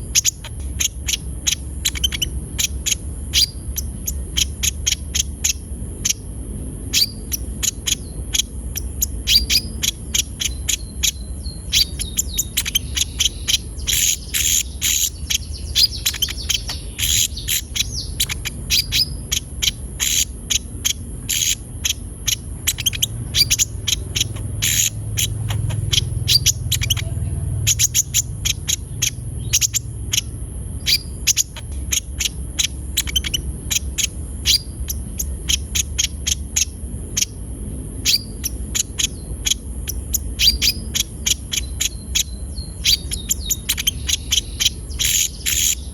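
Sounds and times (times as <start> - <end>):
bird chirping and trilling: 0.0 - 45.9
high-pitched insect whine: 0.0 - 45.9.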